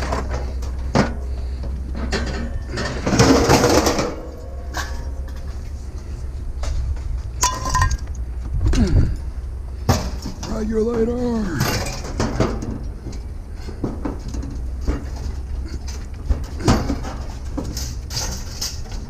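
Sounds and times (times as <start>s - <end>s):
metal scraping rattle: 0.0s - 19.0s
metal parts clinking and rattling: 2.0s - 6.1s, 7.4s - 8.2s, 11.2s - 13.3s, 14.1s - 19.0s.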